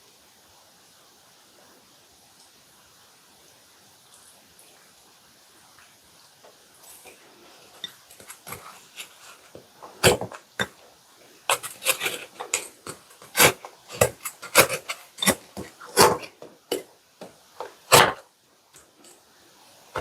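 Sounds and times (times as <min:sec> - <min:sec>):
cookies being crunched: 0:11.5 - 0:16.8.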